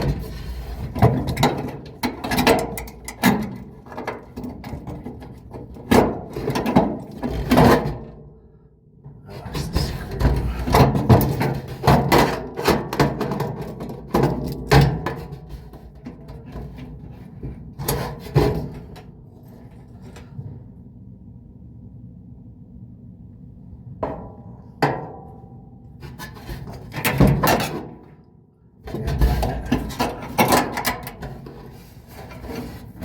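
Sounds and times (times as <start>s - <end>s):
metal parts knocking and clattering: 0.0s - 8.1s, 9.6s - 16.8s, 28.9s - 31.6s.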